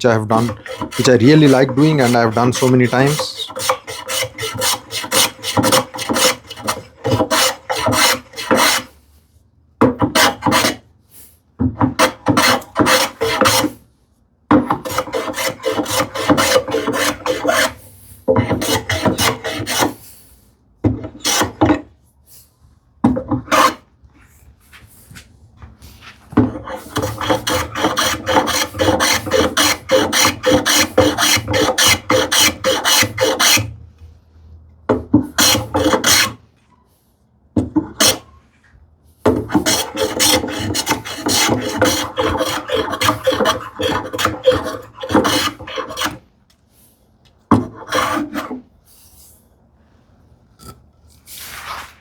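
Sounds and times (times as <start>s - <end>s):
hand plane cutting wood: 0.1s - 9.0s, 9.8s - 10.8s, 11.7s - 13.8s, 14.5s - 20.2s, 20.9s - 21.9s, 23.1s - 23.8s, 26.4s - 33.8s, 35.2s - 36.4s, 37.8s - 38.4s, 39.3s - 46.3s, 47.5s - 48.7s.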